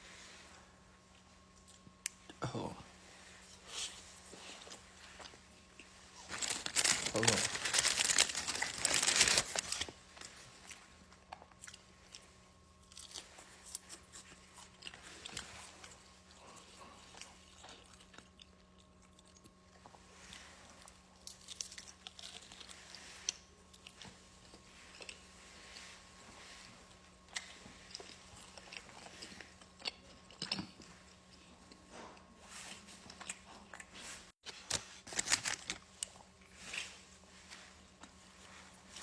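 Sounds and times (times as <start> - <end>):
crunchy chewing: 3.5 - 39.0
paper bag rustling: 6.2 - 10.3.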